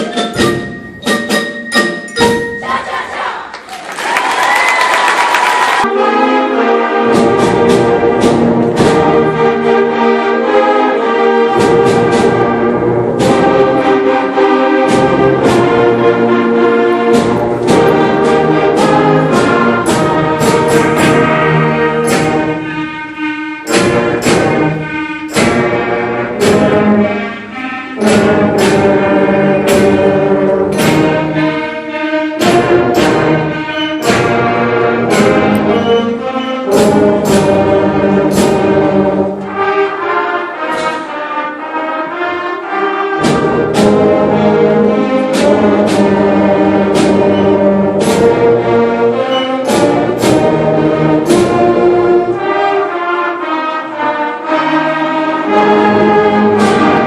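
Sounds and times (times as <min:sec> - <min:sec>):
sharp percussion strikes: 0:00.0 - 0:03.2, 0:17.0 - 0:31.7, 0:32.4 - 0:39.6, 0:43.2 - 0:52.4
brass and wind chords: 0:05.8 - 0:57.0.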